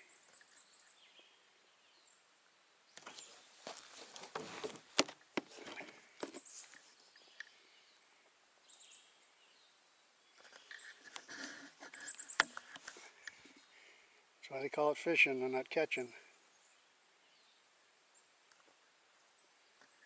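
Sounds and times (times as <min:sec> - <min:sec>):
rustling: 0:03.0 - 0:07.4, 0:10.4 - 0:13.8.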